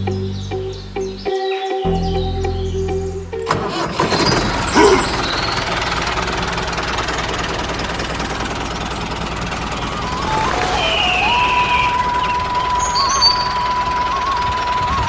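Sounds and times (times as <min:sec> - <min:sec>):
machine squeal: 0:03.5 - 0:06.0, 0:09.7 - 0:15.0
small motor rattling and humming: 0:03.5 - 0:15.0.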